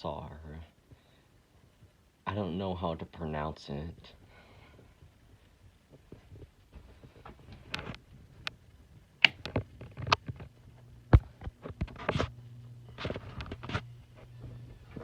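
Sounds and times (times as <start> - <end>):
ceiling fan motor hum: 0.0 - 15.0
sharp clicks and knocks: 9.2 - 10.5.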